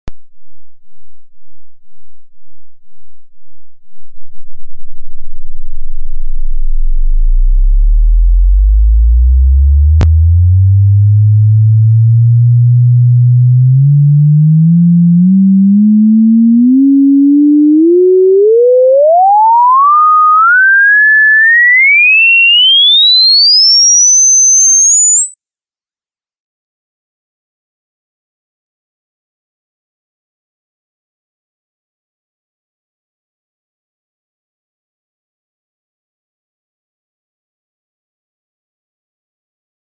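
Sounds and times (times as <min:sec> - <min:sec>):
sine test tone sweeping upward: 0:00.1 - 0:26.4.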